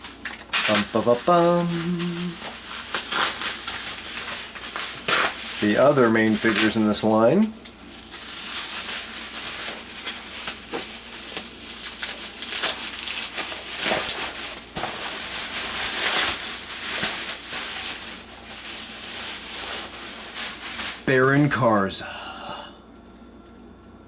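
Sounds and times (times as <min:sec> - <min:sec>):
packing material crinkling: 0:00.0 - 0:21.7.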